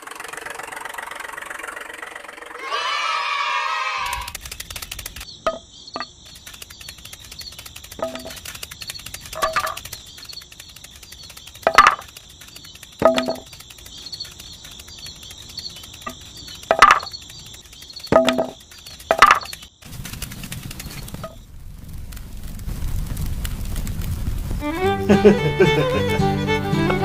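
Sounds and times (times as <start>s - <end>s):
insects chirping: 0.0s - 27.0s
sharp ringing clinks: 13.0s - 13.5s.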